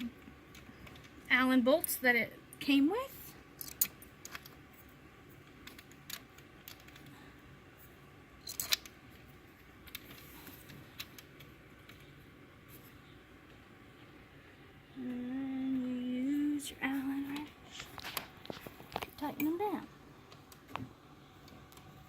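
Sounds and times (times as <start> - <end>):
small metal bolts clicking: 3.5 - 4.6, 8.4 - 9.0.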